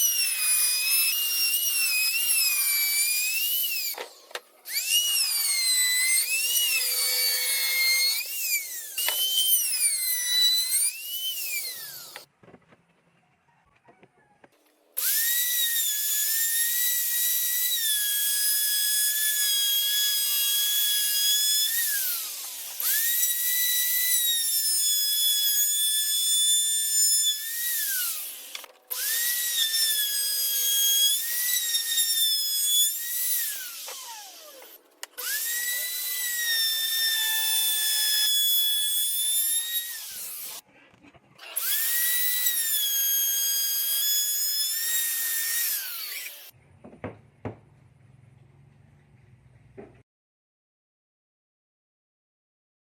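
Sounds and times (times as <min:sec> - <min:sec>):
power tool motor whining: 0:00.0 - 0:12.3, 0:15.0 - 0:40.6, 0:41.4 - 0:46.5.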